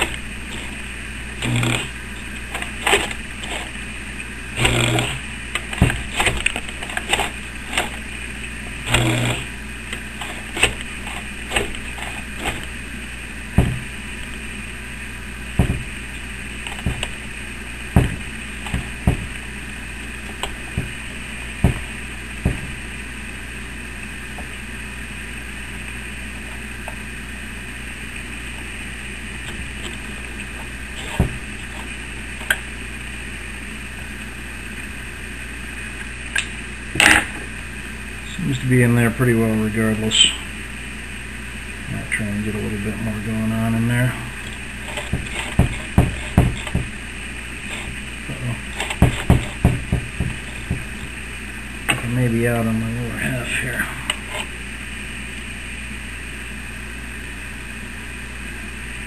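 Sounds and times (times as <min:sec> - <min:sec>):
needle clicking and knocking: 0:00.0 - 0:03.8, 0:04.6 - 0:08.1, 0:08.7 - 0:12.8, 0:15.6 - 0:17.2, 0:17.9 - 0:19.5, 0:44.8 - 0:47.0, 0:48.7 - 0:51.1
sewing machine running: 0:00.0 - 0:03.8, 0:04.5 - 0:08.0, 0:08.8 - 0:12.8
steady hum: 0:00.0 - 0:59.0.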